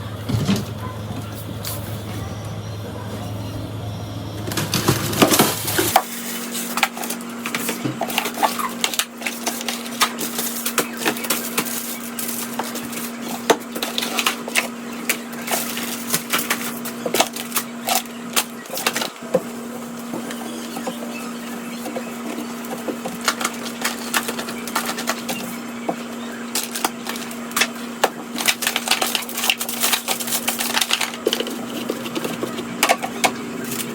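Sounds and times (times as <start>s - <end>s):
steady low hum: 0.0s - 33.9s
household objects clicking and clattering: 21.8s - 33.9s.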